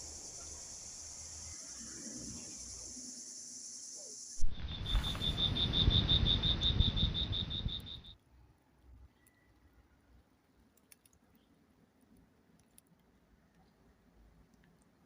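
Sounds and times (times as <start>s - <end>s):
high insect hiss: 0.0s - 8.2s
insect chirping rapidly: 0.0s - 8.2s
low rumble: 4.4s - 8.1s.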